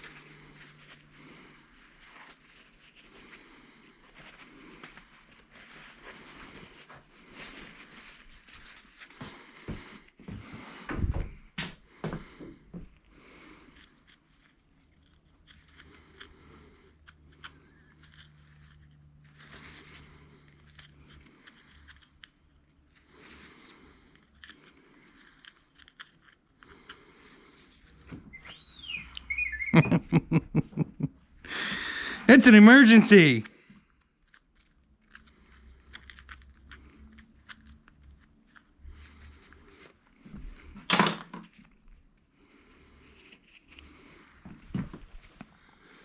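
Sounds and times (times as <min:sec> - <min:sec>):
whistle-like tone: 0:28.3 - 0:30.0.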